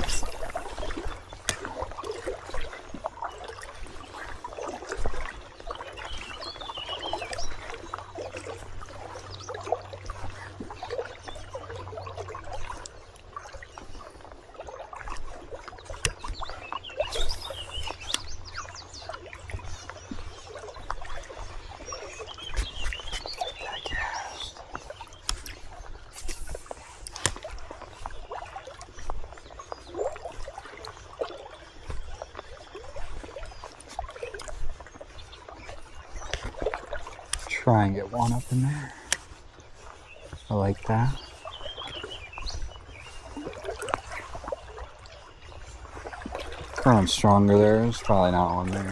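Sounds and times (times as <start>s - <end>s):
small birds calling: 0.0s - 1.9s, 5.3s - 12.0s, 15.8s - 28.3s, 28.9s - 43.4s
river water trickling: 0.0s - 48.9s.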